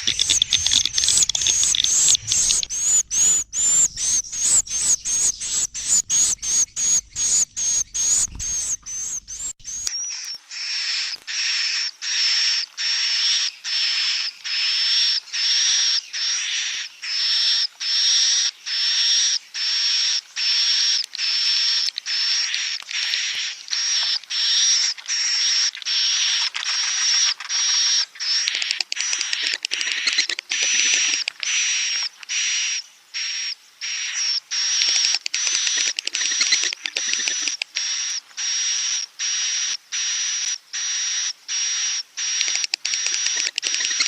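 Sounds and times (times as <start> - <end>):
swiftlet high chirps: 0.0 - 9.9.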